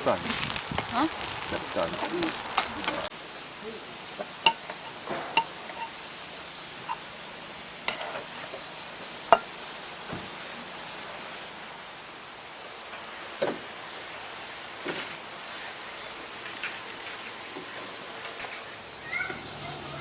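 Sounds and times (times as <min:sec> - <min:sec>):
loud crackly noise: 0:00.0 - 0:03.1.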